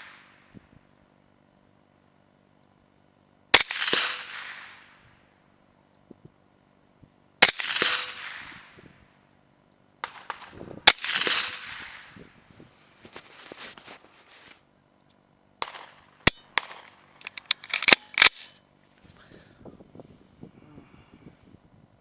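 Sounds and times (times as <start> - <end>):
rifle shots with ringing echo: 3.5 - 5.2, 7.4 - 8.8, 10.0 - 12.2, 15.6 - 17.0.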